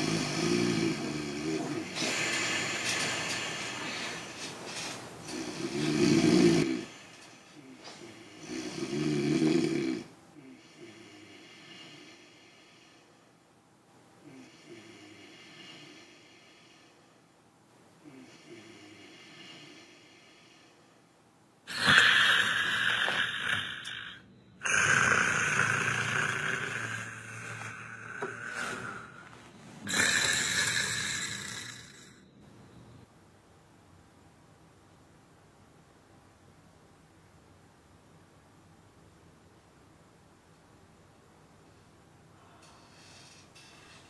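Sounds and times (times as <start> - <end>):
person snoring: 0.0 - 4.5, 5.2 - 13.0, 21.7 - 32.3, 42.4 - 44.0
faint breathy hiss: 0.0 - 44.0.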